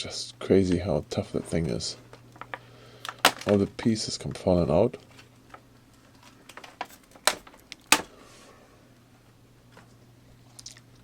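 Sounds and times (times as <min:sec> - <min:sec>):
faint steady hum: 0:00.0 - 0:11.0
plastic packaging handled: 0:01.4 - 0:08.2.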